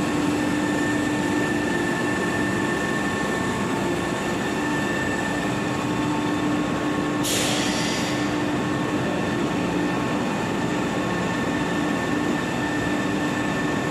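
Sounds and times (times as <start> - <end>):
floor cleaning machine humming: 0.0 - 7.0
brief hiss: 7.2 - 8.2.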